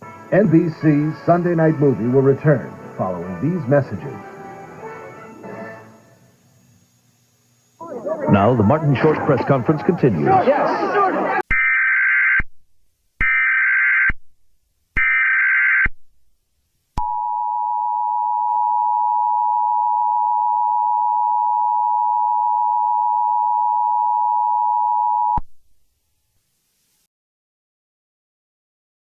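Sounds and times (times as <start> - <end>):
digital data bursts: 0.3 - 6.8, 7.6 - 12.4.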